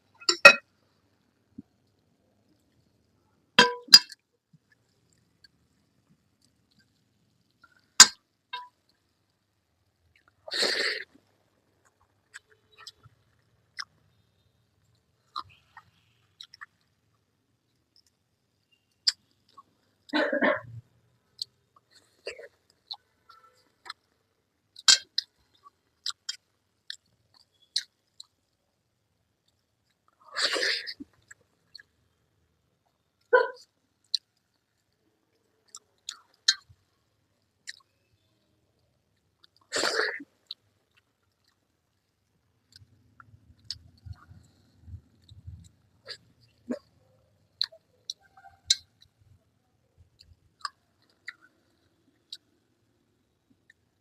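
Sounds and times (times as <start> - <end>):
dishes clinking: 0.3 - 0.6, 3.6 - 4.1
chewing: 10.1 - 17.2, 21.4 - 28.6, 29.4 - 32.2, 32.8 - 38.4, 39.2 - 49.2, 50.0 - 52.6.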